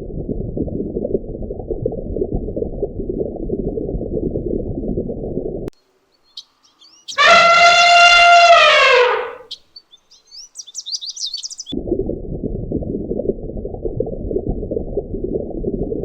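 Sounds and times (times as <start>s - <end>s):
faint bird chirps: 6.2s - 9.5s
drawn-out animal call: 7.2s - 9.4s.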